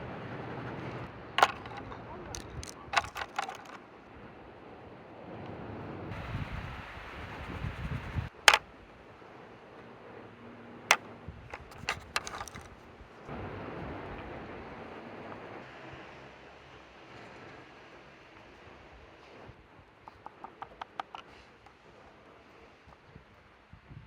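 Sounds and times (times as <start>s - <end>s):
clicks and taps: 1.4s - 3.8s, 20.1s - 21.8s
wind gusts on microphone: 5.2s - 8.9s, 11.2s - 16.1s, 22.9s - 24.0s.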